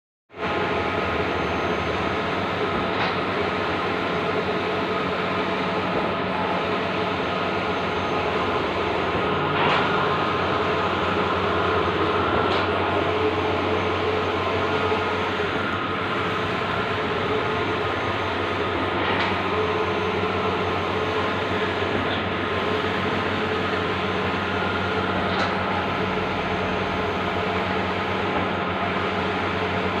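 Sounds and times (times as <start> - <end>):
printer mechanical hum and hiss: 0.4 - 30.0.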